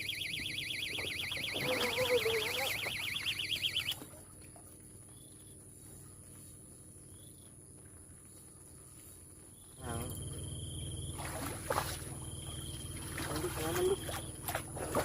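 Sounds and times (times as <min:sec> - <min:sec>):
insects trilling: 0:00.0 - 0:03.9, 0:09.5 - 0:14.5.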